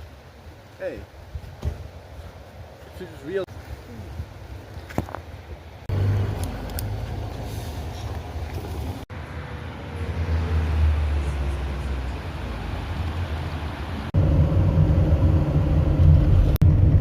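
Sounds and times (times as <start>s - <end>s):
low rumbling noise: 10.0s - 17.0s.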